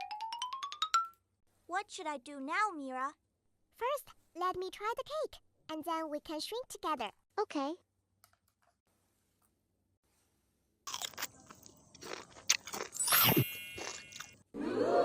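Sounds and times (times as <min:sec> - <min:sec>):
crunchy chewing and biting: 0:10.9 - 0:14.4.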